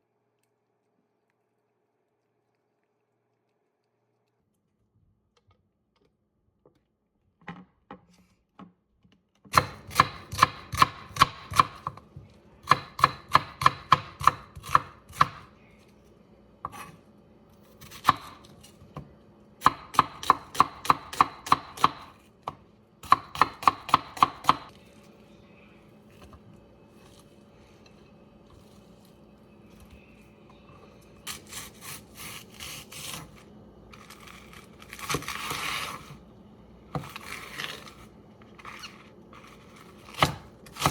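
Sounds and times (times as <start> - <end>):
knife chopping on cutting board: 9.5 - 12.0, 12.6 - 15.5, 16.7 - 16.9, 17.8 - 18.8, 19.6 - 24.7.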